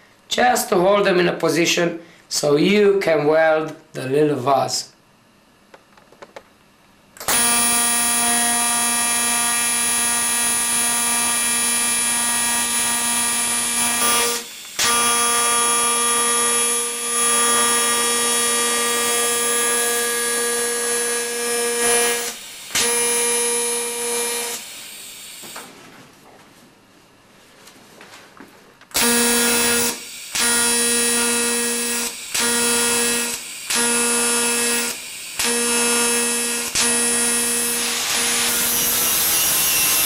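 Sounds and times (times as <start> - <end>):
welding arc buzzing: 7.2 - 25.8, 28.9 - 40.0.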